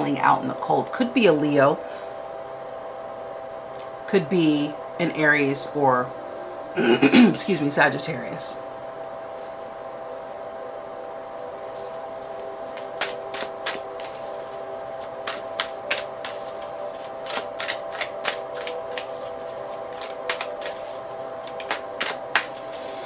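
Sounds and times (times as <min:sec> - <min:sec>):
cards being shuffled: 0:11.6 - 0:23.0.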